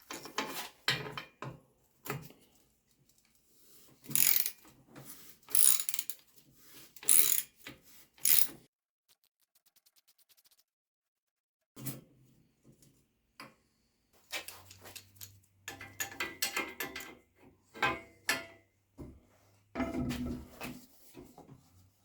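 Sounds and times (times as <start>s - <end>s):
tools and metal bike parts clinking: 0.0s - 2.3s, 4.0s - 4.8s, 5.5s - 6.3s, 7.0s - 8.6s, 14.3s - 18.7s.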